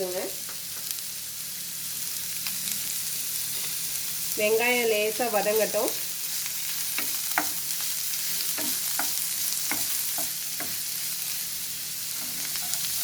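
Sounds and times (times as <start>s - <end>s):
onion sizzling in hot oil: 0.0s - 13.0s
utensil knocking against pan: 8.5s - 10.8s.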